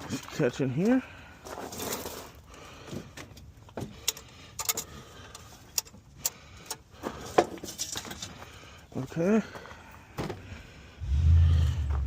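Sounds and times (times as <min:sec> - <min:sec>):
hand tools clicking and clinking: 0:04.0 - 0:08.5.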